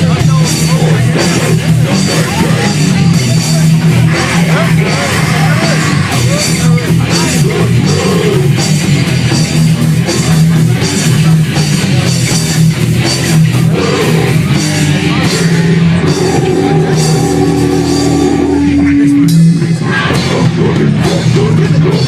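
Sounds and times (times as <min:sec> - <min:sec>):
shouted vocals: 0:00.0 - 0:08.7, 0:13.6 - 0:22.0
bass guitar: 0:00.0 - 0:22.0
distorted electric guitars: 0:00.0 - 0:22.0
pounding drums: 0:00.0 - 0:22.0.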